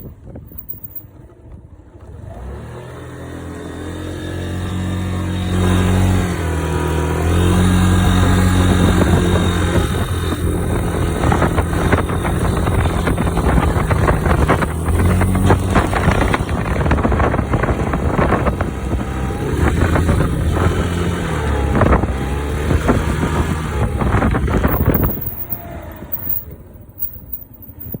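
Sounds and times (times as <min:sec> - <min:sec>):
plastic part rattling: 0:24.7 - 0:28.0.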